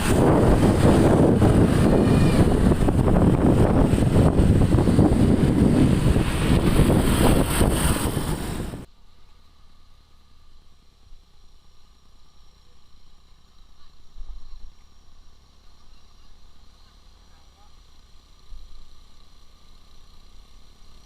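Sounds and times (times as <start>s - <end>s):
wind rushing over microphone: 0.0s - 8.9s
road noise: 0.0s - 21.0s.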